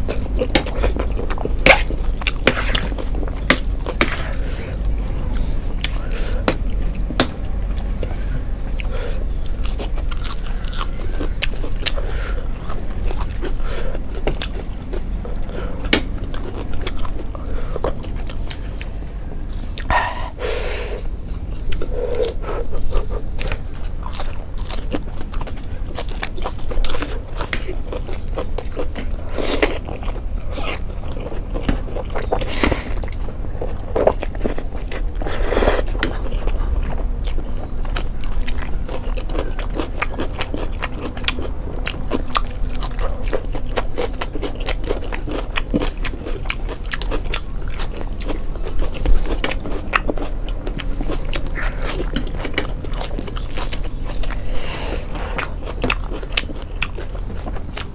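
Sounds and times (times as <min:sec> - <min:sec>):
people chewing food: 0:00.0 - 0:57.9.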